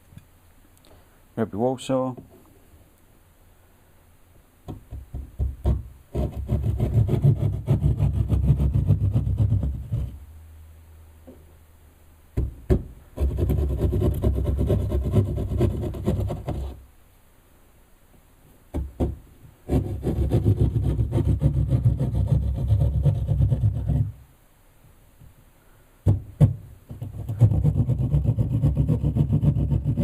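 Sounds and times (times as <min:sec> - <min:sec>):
sharp knocks: 0:12.4 - 0:14.1, 0:18.7 - 0:19.9, 0:26.0 - 0:27.8.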